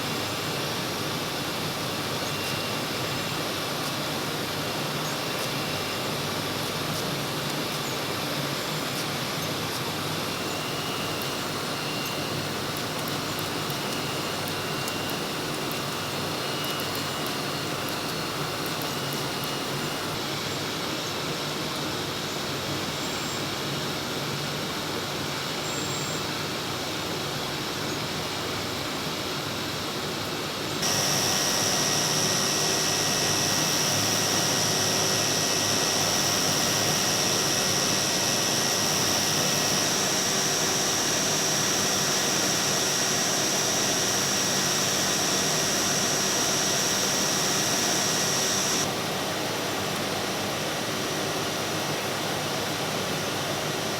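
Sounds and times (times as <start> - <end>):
high-pitched whine: 30.8 - 48.9
machines humming: 30.8 - 48.9.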